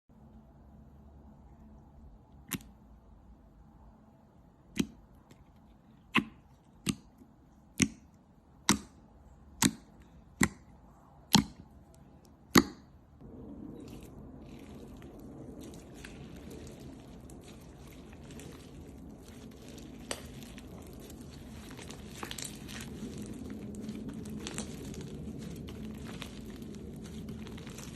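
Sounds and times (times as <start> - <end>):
crackly slime squishing: 4.7 - 27.9
slime popping: 13.7 - 27.9.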